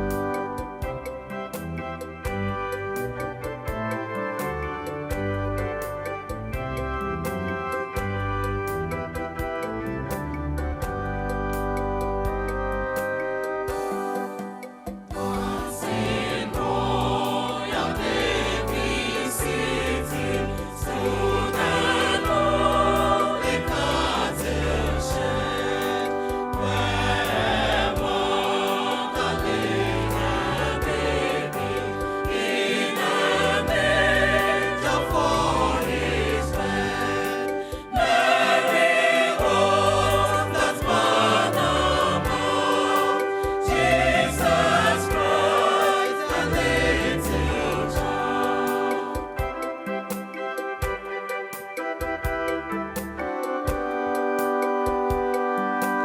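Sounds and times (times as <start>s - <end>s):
instrumental backing with steady beat: 0.0s - 56.0s
gospel choir singing: 13.4s - 56.0s
bass line: 15.2s - 32.2s, 46.3s - 48.5s.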